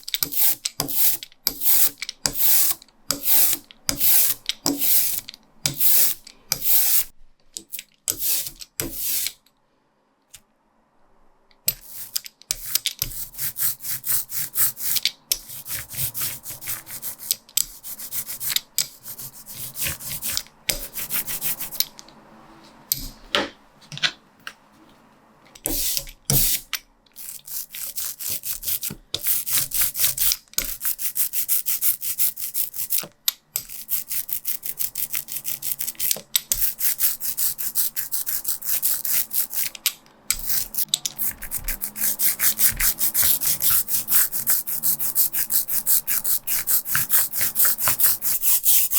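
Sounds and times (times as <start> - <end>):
rubber roller rolling through ink: 40.4 - 48.9.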